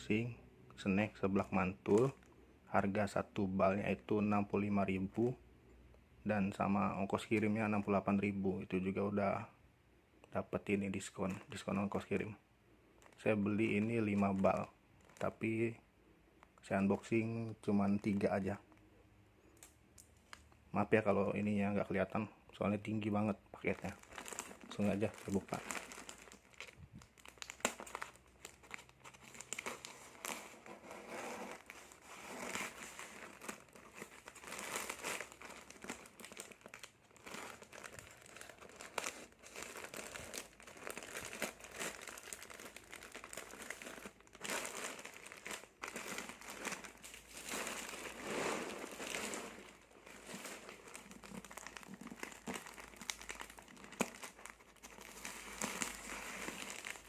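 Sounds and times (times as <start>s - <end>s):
packaging crinkling and rustling: 13.0s - 15.6s, 23.6s - 57.0s.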